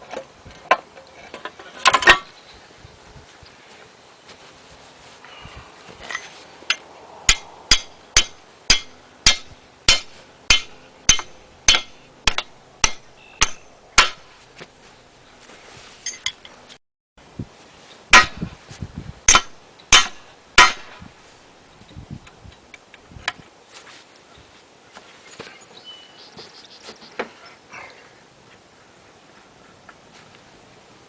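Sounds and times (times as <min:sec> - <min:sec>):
hammer striking metal: 0:06.7 - 0:14.4, 0:18.2 - 0:18.4, 0:19.3 - 0:21.0.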